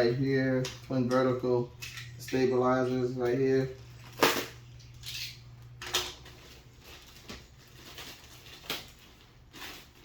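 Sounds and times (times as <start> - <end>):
packaging rustling: 5.8 - 10.0.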